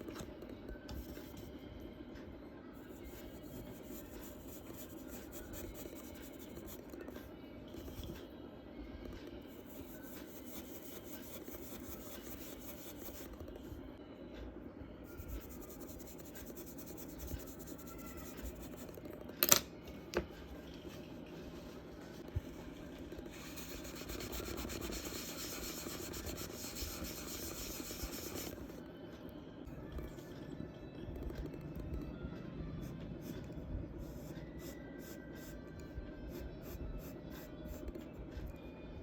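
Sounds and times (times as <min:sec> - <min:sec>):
charcoal rubbing on paper: 0:23.3 - 0:28.6.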